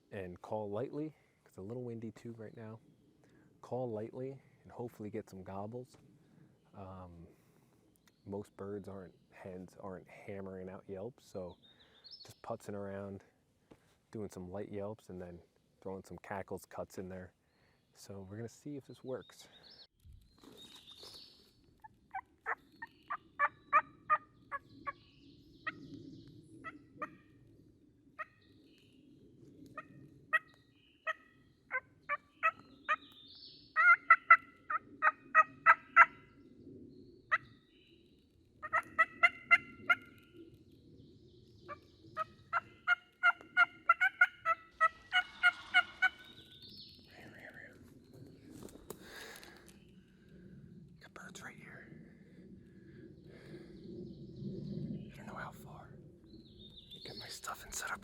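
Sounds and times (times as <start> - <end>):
hen turkey yelping: 22.1 - 24.2, 33.8 - 36.2, 38.6 - 40.1, 41.7 - 46.3.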